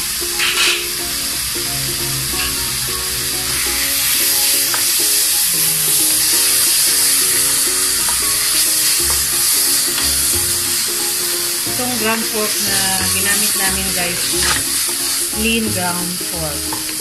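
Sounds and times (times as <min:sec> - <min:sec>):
meat sizzling in a pan: 0:00.0 - 0:17.0
repeating background music: 0:00.0 - 0:17.0.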